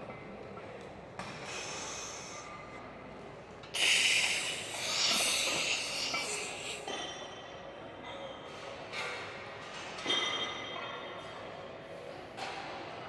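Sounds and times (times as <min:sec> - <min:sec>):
person inhaling: 0:01.4 - 0:02.5, 0:03.8 - 0:06.9
forceful hissing exhale: 0:01.4 - 0:02.6, 0:03.8 - 0:06.9.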